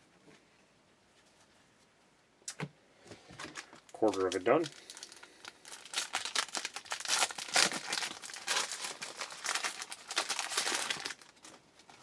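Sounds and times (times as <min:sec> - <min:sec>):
plastic wrapper tearing and crinkling: 0:03.4 - 0:12.0.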